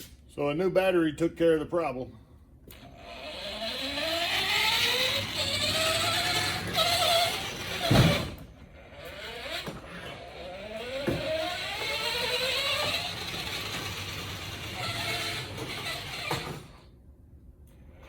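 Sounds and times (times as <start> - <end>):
electric motors whining: 2.7 - 16.9
thump: 7.8 - 8.4.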